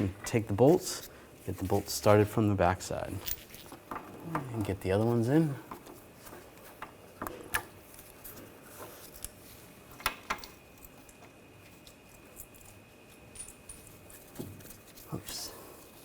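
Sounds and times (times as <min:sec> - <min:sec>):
metal parts clicking and tapping: 0:02.9 - 0:07.8, 0:10.0 - 0:14.5.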